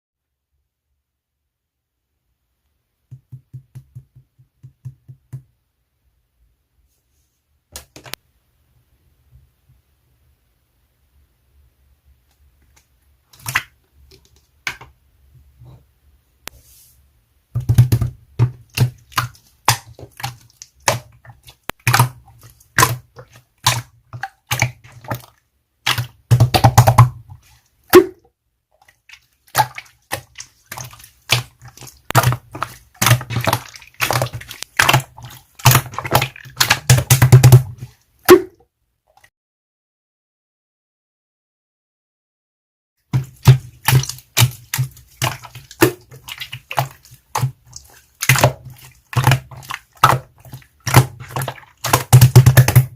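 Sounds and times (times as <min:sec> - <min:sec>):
slime squished by hand: 0:29.0 - 0:38.5, 0:43.2 - 0:52.9.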